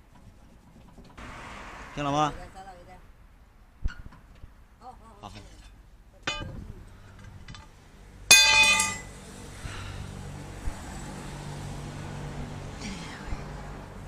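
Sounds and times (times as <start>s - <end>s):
low engine hum: 5.9s - 14.0s.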